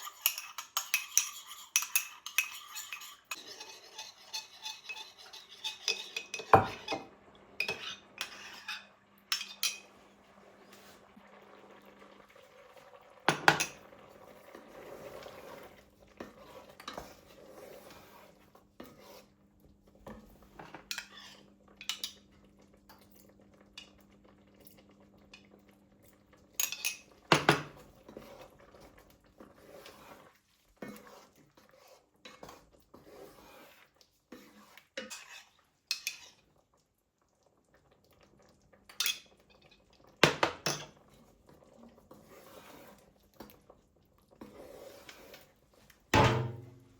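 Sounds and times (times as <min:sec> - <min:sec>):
dishes and cutlery clinking: 0:00.0 - 0:09.9, 0:26.6 - 0:27.8, 0:46.2 - 0:46.9.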